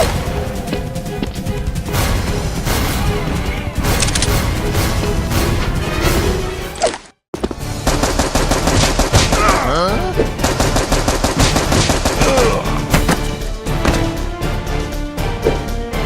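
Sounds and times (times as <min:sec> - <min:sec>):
automatic gunfire sound effects: 0:07.8 - 0:09.7, 0:10.4 - 0:12.5.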